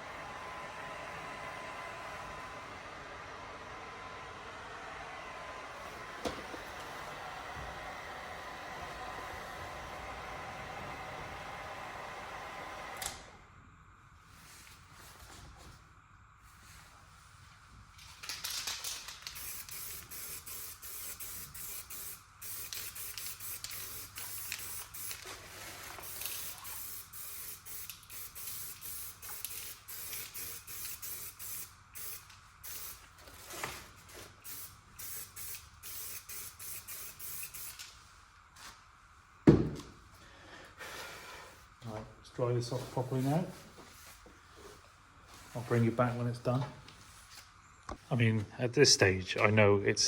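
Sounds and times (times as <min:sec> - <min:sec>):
aerosol spray can hissing: 0:19.3 - 0:25.2, 0:26.0 - 0:33.0, 0:34.4 - 0:37.8.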